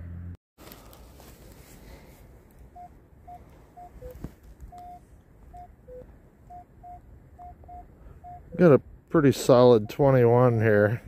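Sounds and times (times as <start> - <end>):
metal detector beeps: 2.8 - 8.6, 9.8 - 10.2.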